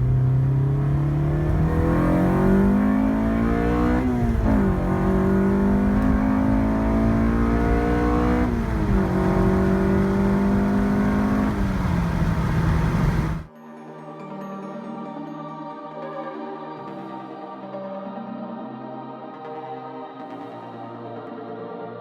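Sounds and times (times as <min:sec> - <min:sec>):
car engine accelerating: 0:00.0 - 0:13.5.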